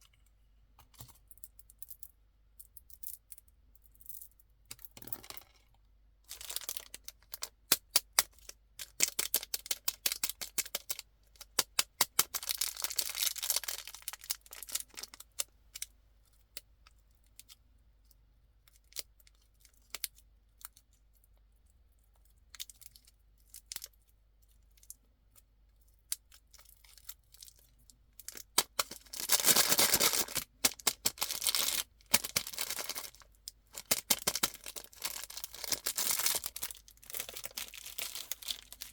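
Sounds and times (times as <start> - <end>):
candy wrappers crinkling: 6.3 - 15.3, 26.6 - 38.9.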